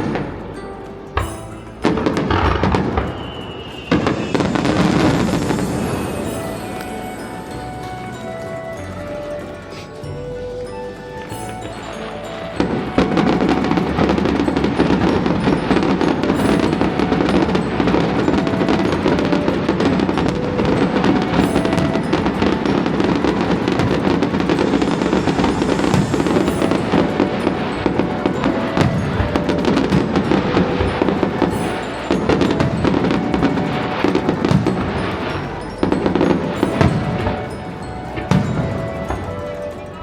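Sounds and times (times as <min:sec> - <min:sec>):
fireworks booming and crackling: 0:00.0 - 0:10.0, 0:11.2 - 0:40.0
music: 0:00.0 - 0:40.0.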